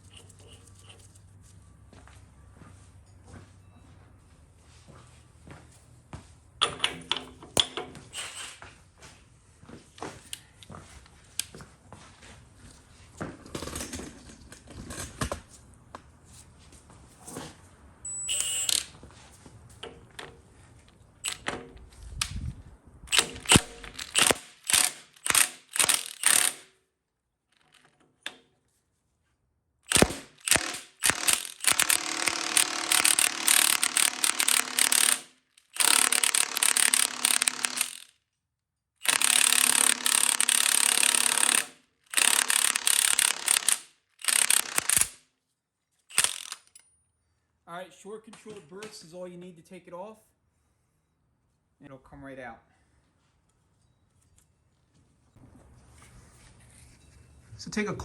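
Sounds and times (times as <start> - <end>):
tool clicking on screw: 18.3 - 18.9, 23.1 - 26.7, 29.9 - 38.1, 39.0 - 45.2, 46.1 - 46.9
impact wrench hammering: 23.1 - 26.6, 29.9 - 38.1, 39.0 - 45.2, 46.1 - 46.6.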